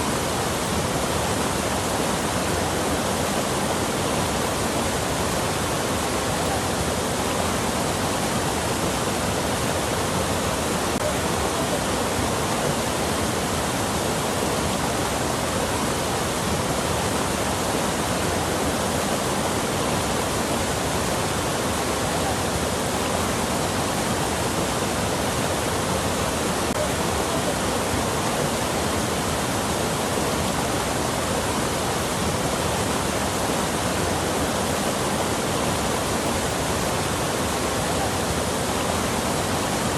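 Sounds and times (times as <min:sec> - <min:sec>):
water rushing: 0:00.0 - 0:39.9.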